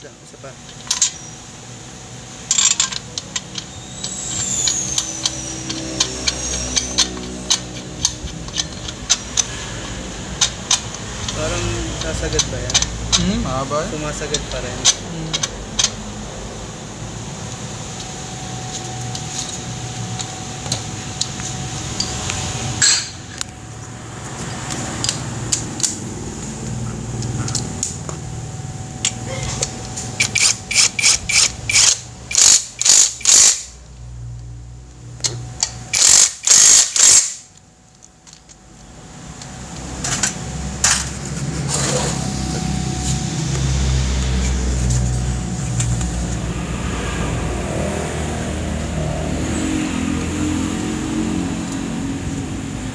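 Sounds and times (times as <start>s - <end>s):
steady background hum: 0.0s - 52.9s
power tool bursts: 30.2s - 33.8s, 35.9s - 37.5s.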